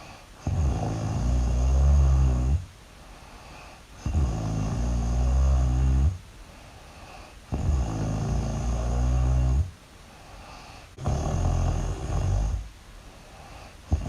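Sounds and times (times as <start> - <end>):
loud deep snoring: 0.0 - 2.7, 4.0 - 6.2, 7.1 - 9.7, 11.0 - 12.7, 13.4 - 14.0.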